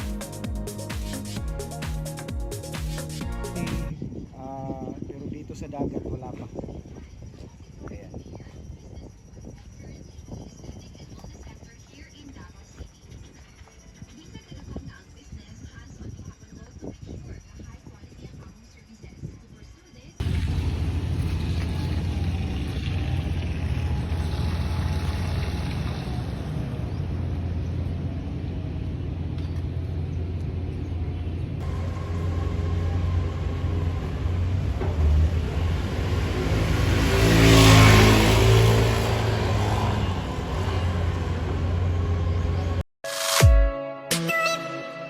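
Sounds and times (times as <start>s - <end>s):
low engine rumble: 20.2s - 42.8s
vehicle passing: 20.2s - 42.8s.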